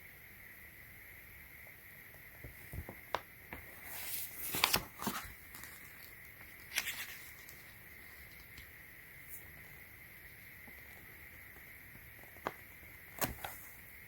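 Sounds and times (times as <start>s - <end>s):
packaging crinkling and tearing: 3.9s - 8.7s.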